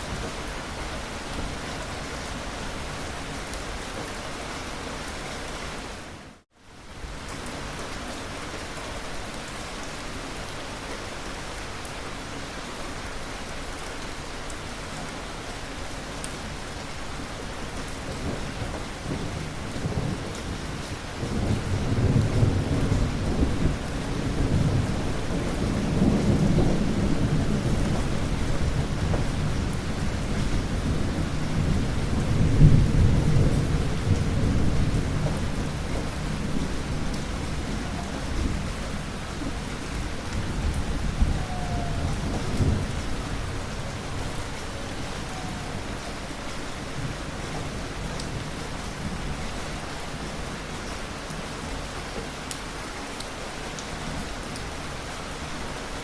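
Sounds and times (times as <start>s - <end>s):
rain hissing: 14.5s - 56.0s
thunder rolling: 18.0s - 49.2s.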